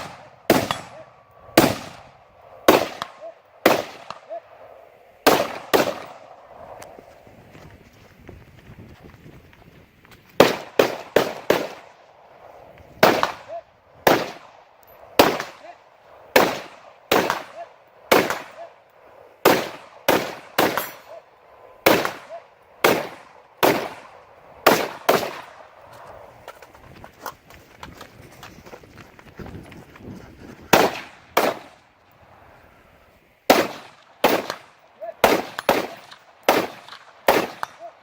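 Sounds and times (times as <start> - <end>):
rifle shots: 0.0 - 4.3, 5.2 - 6.3, 10.4 - 12.0, 13.0 - 14.6, 15.2 - 18.7, 19.4 - 21.2, 21.8 - 25.6, 30.7 - 31.8, 33.5 - 37.8.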